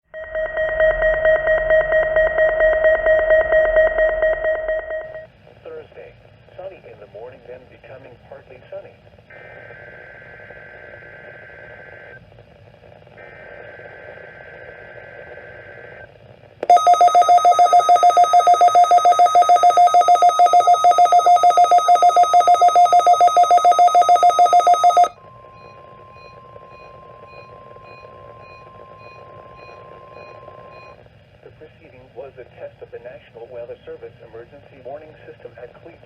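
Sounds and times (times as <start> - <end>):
rapidly pulsing electronic alarm beep: 0.1 - 5.3, 16.6 - 31.0
steady single-pitch alarm tone: 0.1 - 5.3, 16.6 - 31.0
digital header tones: 16.6 - 31.0.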